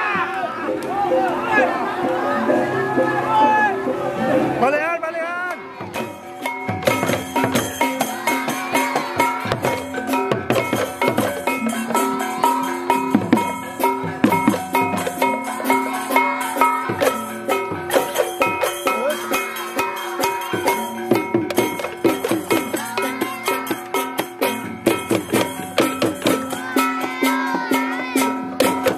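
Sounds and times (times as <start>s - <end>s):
drums: 0.0s - 28.9s
clattering cymbals: 5.9s - 28.9s.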